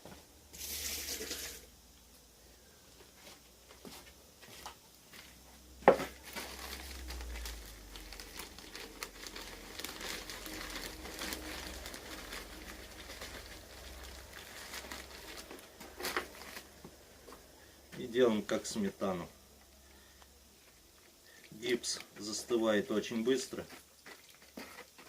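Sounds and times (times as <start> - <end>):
plaster mix scraping and crinkling: 0.6 - 1.6, 23.3 - 25.0.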